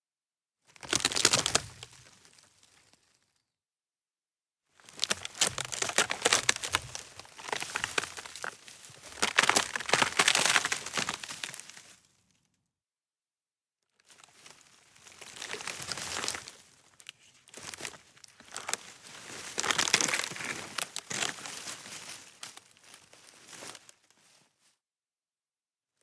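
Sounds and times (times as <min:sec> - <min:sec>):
dry wood snapping: 0:00.8 - 0:01.6, 0:05.0 - 0:08.5, 0:09.1 - 0:11.7, 0:19.6 - 0:21.4.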